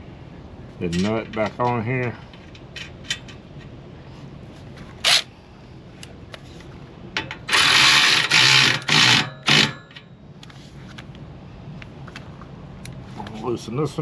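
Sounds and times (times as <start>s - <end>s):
power tool spinning a nut: 7.5s - 9.8s.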